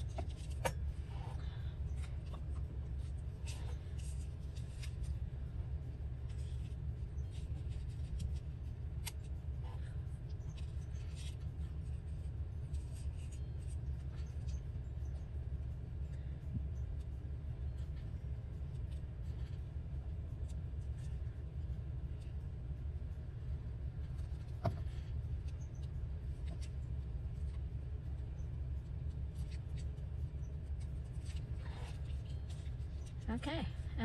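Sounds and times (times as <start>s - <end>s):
paper rustling: 0.0s - 0.8s, 1.9s - 5.2s, 6.2s - 9.3s, 30.7s - 33.2s
steady low hum: 0.0s - 34.0s.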